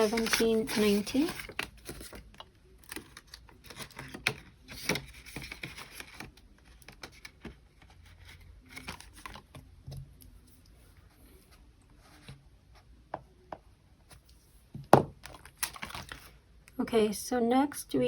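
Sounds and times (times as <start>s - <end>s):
paper bills rustling: 0.0s - 6.3s
paper crackling: 0.0s - 7.3s.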